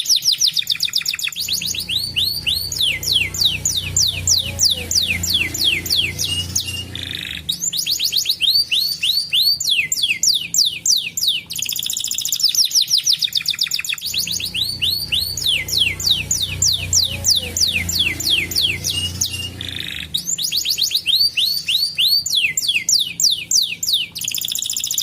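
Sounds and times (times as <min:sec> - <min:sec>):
canary singing: 0:00.0 - 0:25.0
low steady hum: 0:01.4 - 0:11.6.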